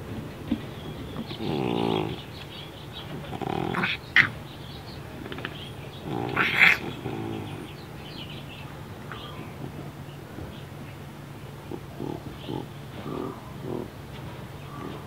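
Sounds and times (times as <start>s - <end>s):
cat snorting and grunting: 1.2s - 2.3s, 3.2s - 4.4s, 6.0s - 7.8s, 11.6s - 13.9s.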